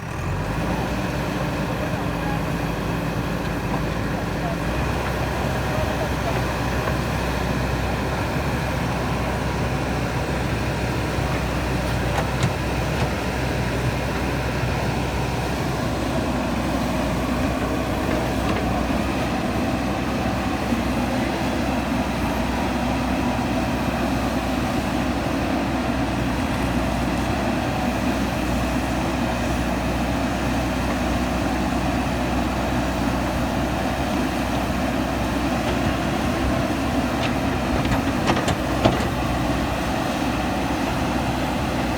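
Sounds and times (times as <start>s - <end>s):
diesel engine running under load: 0.0s - 41.9s.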